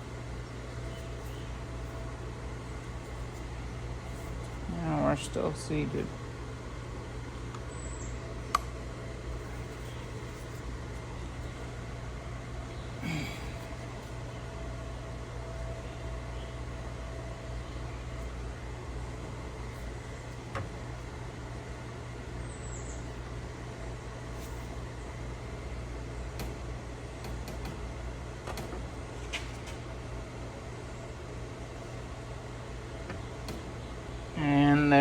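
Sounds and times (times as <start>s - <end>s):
low background hum: 0.0s - 35.0s.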